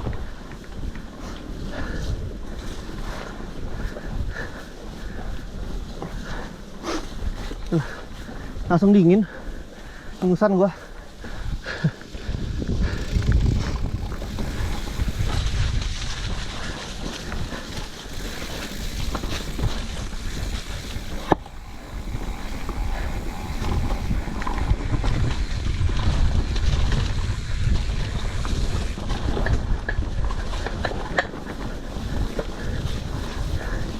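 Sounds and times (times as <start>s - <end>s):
bike rattling over ground: 0.0s - 9.8s, 10.4s - 33.9s
wind buffeting microphone: 10.9s - 33.9s
low rumble: 12.3s - 28.2s.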